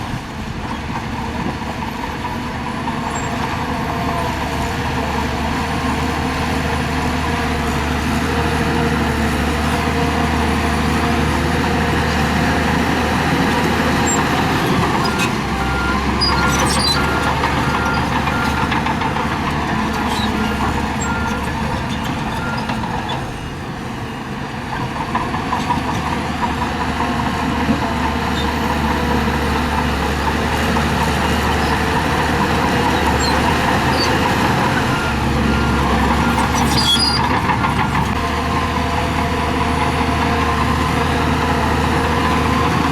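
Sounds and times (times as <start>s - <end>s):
diesel earthmoving machinery: 0.0s - 42.9s
reversing alarm beeping: 13.9s - 24.2s, 32.1s - 38.1s.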